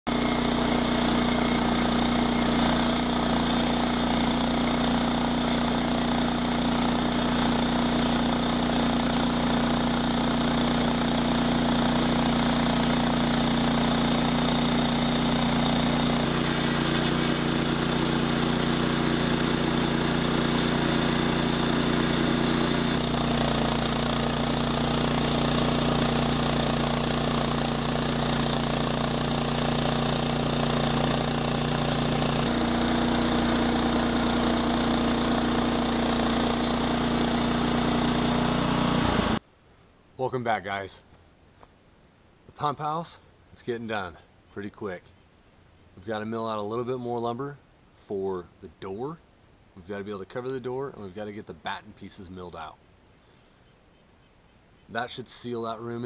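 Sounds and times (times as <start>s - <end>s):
engine running steadily: 0.1s - 39.4s.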